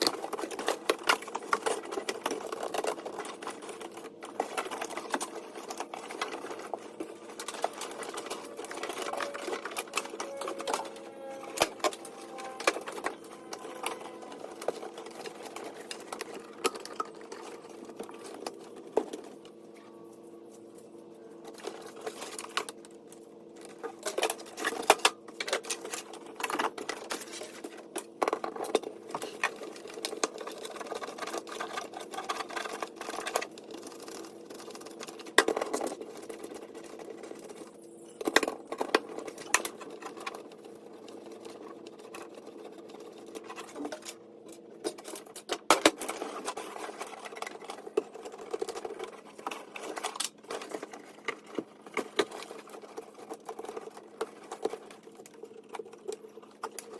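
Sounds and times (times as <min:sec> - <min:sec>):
clicks and rattles of hand work: 0:00.0 - 0:19.5, 0:21.4 - 0:56.9.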